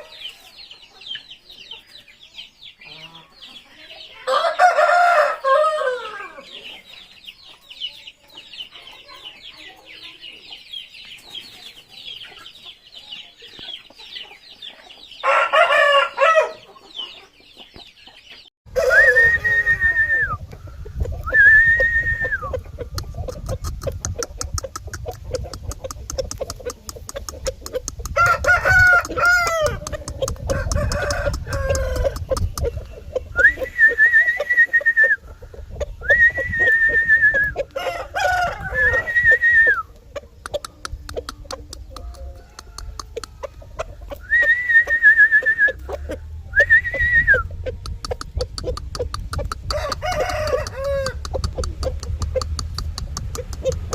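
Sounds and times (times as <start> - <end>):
chickens calling and clucking: 0.0 - 53.9
rooster crowing: 4.3 - 6.4, 15.2 - 16.6, 18.7 - 19.6, 28.2 - 29.9, 30.5 - 32.2, 37.7 - 39.8, 49.7 - 51.3
rapid high peeping: 22.0 - 53.9.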